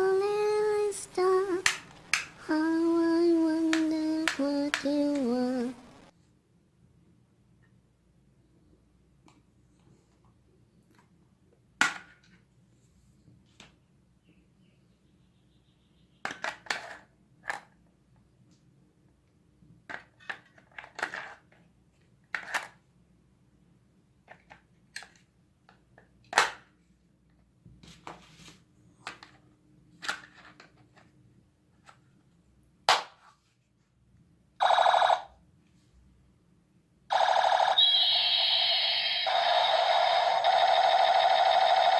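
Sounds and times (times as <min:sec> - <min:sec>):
buzzy electronic toy gun blast: 0:37.1 - 0:41.9.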